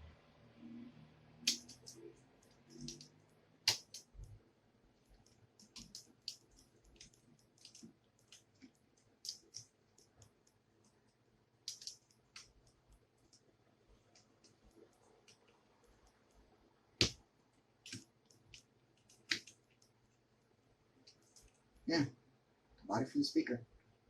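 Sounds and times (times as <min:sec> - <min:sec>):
laptop parts clicking and tapping: 0:01.4 - 0:04.4, 0:05.1 - 0:13.5, 0:17.8 - 0:19.9.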